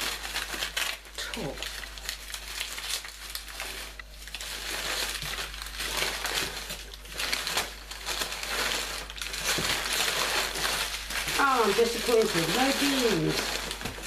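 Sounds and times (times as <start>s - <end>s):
packing paper crinkling: 0.0s - 14.0s.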